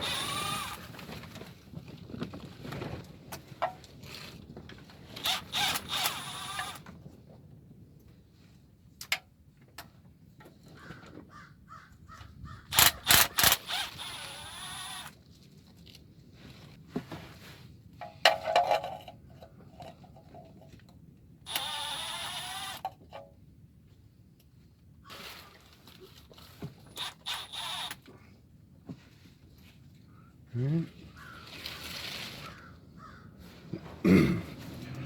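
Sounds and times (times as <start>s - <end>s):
cordless drill whining: 0.0s - 1.2s, 5.2s - 6.8s, 12.7s - 15.2s, 21.5s - 22.9s, 26.8s - 28.1s
sharp metallic clicks: 12.7s - 14.6s.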